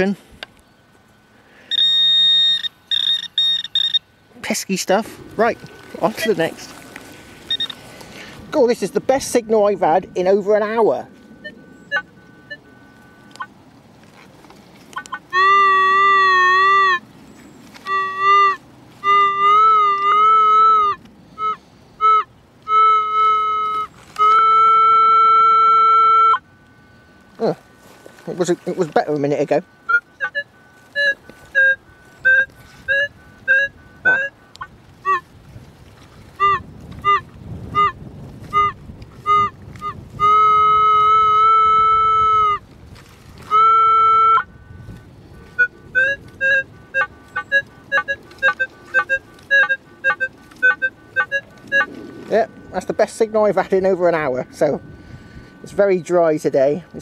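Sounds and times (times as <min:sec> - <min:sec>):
metal detector beeping: 0:01.7 - 0:06.9, 0:07.5 - 0:07.8, 0:08.5 - 0:13.5, 0:14.9 - 0:17.0, 0:17.8 - 0:35.2, 0:36.4 - 0:42.6, 0:43.5 - 0:57.0.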